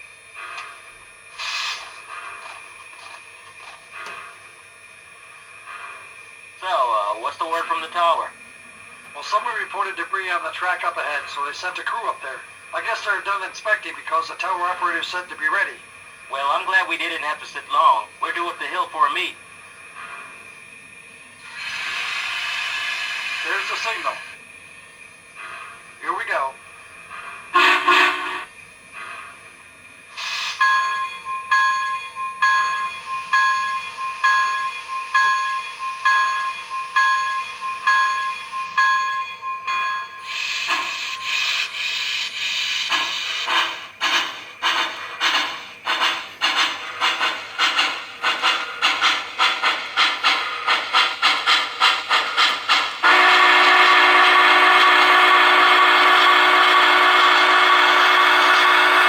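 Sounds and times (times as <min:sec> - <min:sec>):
steam hiss: 0:00.0 - 0:24.5, 0:25.1 - 0:31.0, 0:40.1 - 0:59.0
steam whistle blast: 0:27.6 - 0:28.5, 0:53.0 - 0:59.0
model locomotive bell ringing: 0:30.5 - 0:41.4.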